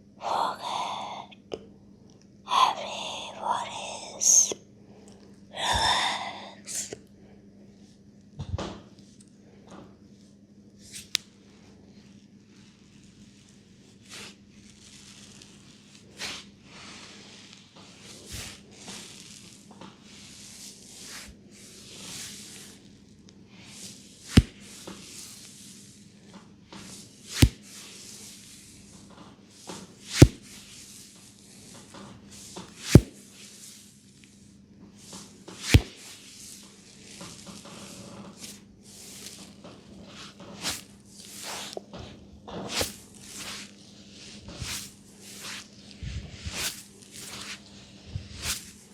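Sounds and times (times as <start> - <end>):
hands rubbing hair and scalp: 14.0 - 22.8, 23.7 - 25.7, 26.8 - 28.9, 29.6 - 31.1, 32.4 - 33.8, 35.0 - 42.0, 42.6 - 48.9
sharp smacks: 30.2 - 30.4, 32.9 - 33.1, 35.6 - 36.0.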